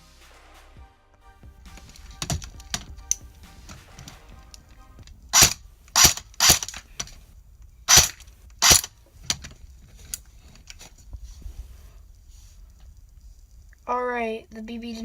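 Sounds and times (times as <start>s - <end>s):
airsoft gun shots: 5.3s - 6.8s, 7.9s - 8.9s.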